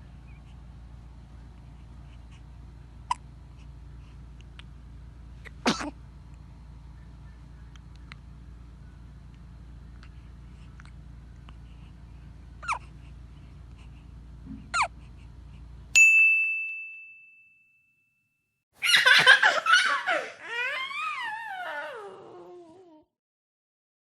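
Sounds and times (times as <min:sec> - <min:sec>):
low hum: 0:00.0 - 0:16.0
bright ding: 0:16.0 - 0:18.2.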